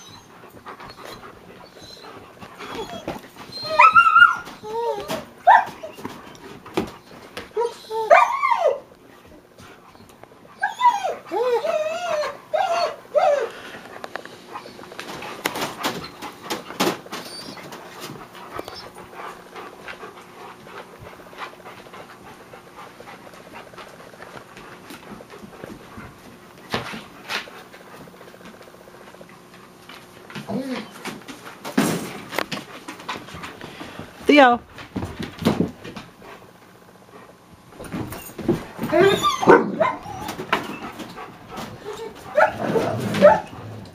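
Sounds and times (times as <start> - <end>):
dogs whining and yelping: 0.0 - 19.7, 38.1 - 43.9.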